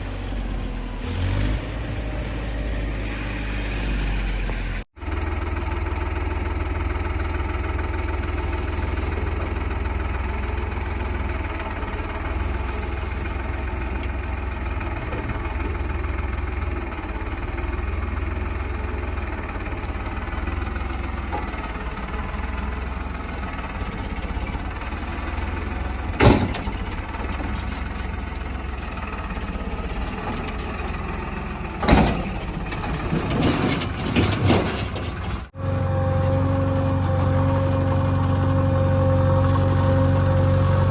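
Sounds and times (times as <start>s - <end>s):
diesel engine running: 0.0s - 40.9s
knocks and clatter: 25.9s - 35.5s.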